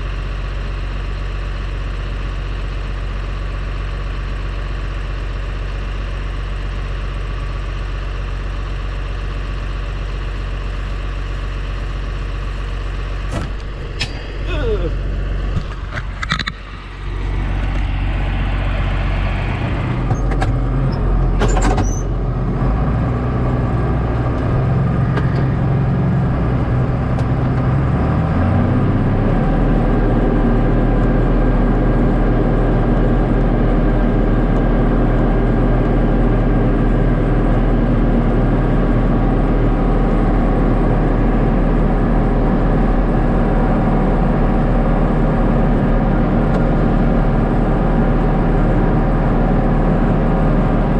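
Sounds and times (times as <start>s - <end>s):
tractor diesel engine running: 0.0s - 50.9s.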